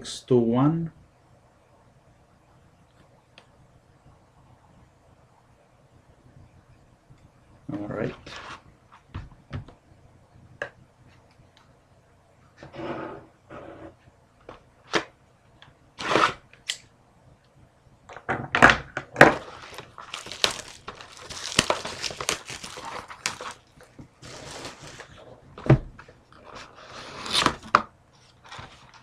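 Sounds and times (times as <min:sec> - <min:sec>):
plastic wrapper crinkling and tearing: 0:19.3 - 0:25.2.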